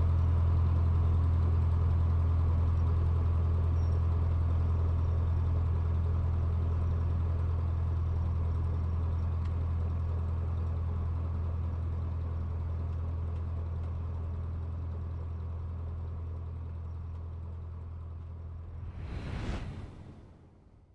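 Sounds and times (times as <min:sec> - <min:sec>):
propeller plane engine droning: 0:17.8 - 0:20.8.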